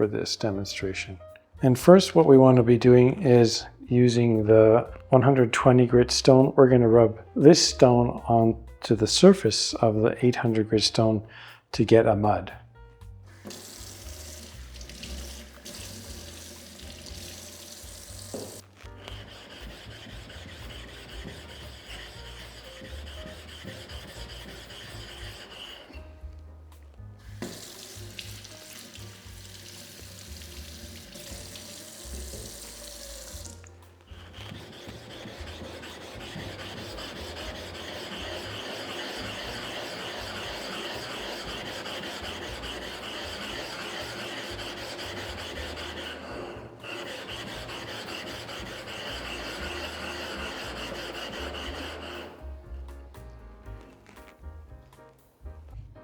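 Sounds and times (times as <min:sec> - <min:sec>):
stone scraping on wet stone: 0:13.4 - 0:26.1, 0:30.7 - 0:52.4.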